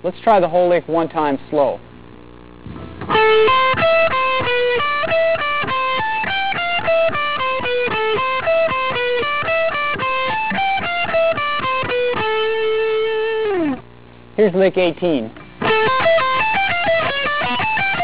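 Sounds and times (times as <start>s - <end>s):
electric guitar single notes: 2.4s - 14.0s, 15.3s - 18.0s.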